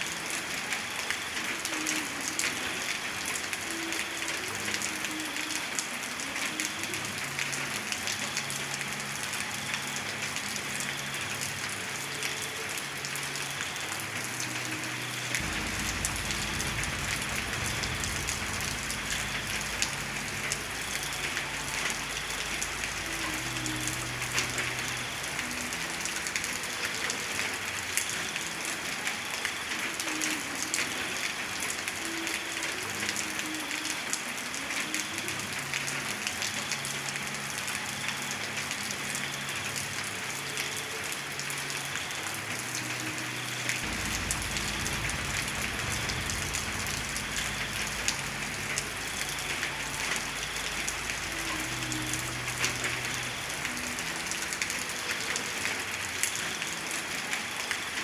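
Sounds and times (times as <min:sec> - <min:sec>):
heavy rain falling: 0:00.0 - 0:58.0
deep low rumble: 0:15.4 - 0:21.0, 0:43.9 - 0:49.3.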